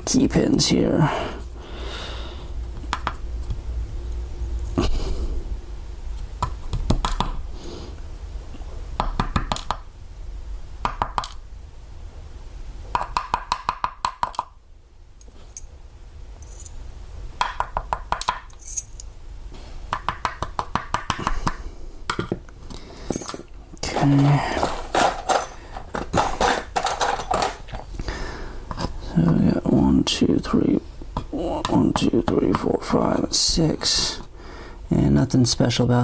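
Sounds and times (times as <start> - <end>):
metal lock pins clinking: 18.5 - 19.1.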